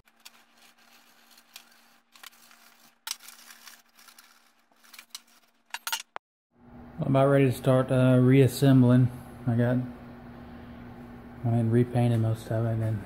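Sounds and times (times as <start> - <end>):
scraping on metal parts: 0.0 - 6.2.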